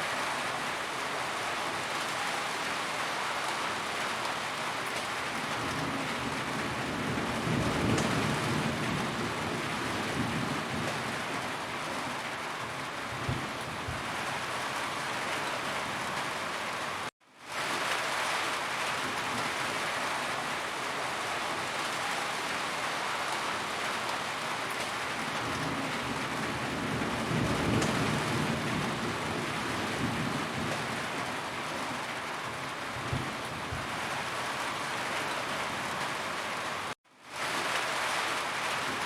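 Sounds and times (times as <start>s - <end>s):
rain drumming on a roof: 0.0s - 39.0s
low rumble of thunder: 5.5s - 11.6s, 25.2s - 31.4s, 32.9s - 34.0s.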